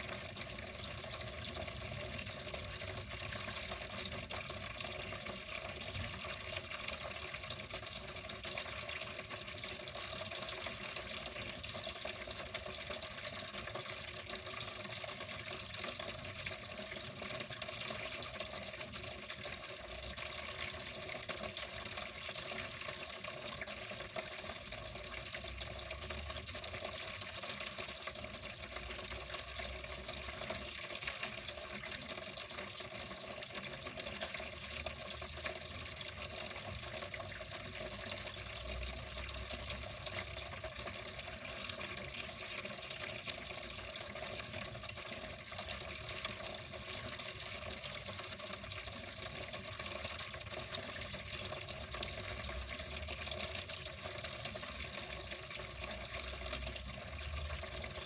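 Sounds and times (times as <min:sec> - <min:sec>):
water running and splashing: 0:00.0 - 0:58.0.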